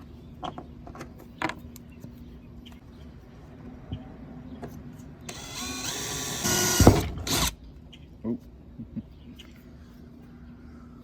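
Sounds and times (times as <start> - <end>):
power drill whining: 5.3 - 7.6.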